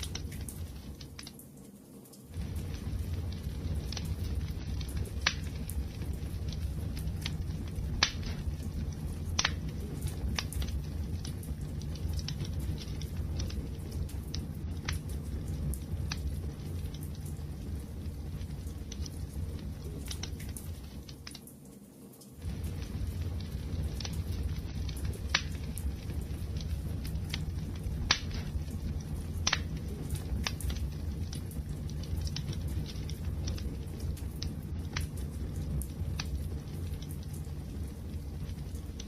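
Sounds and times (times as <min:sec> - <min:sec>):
wood fire rumbling: 0:00.0 - 0:21.8, 0:22.4 - 0:39.0
fire crackles and pops: 0:00.0 - 0:39.0.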